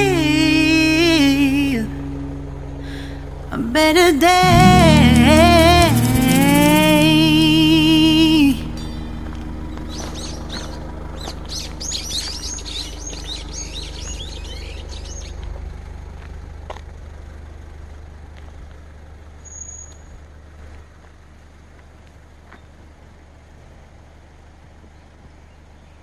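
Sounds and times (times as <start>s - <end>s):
steady low rumble: 0.0s - 19.4s
songbirds chirping: 8.6s - 15.8s.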